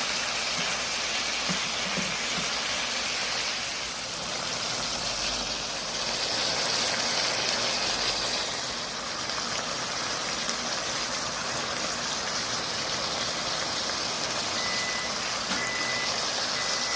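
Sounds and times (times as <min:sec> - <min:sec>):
stir-fry sizzling in a pan: 0:00.0 - 0:16.9
high electronic beep: 0:14.6 - 0:16.9.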